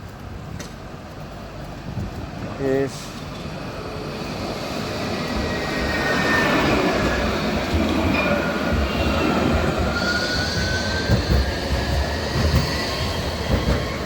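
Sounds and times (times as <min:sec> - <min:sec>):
tram rumbling past: 0:00.0 - 0:14.0
high wheel squeal: 0:08.1 - 0:14.0.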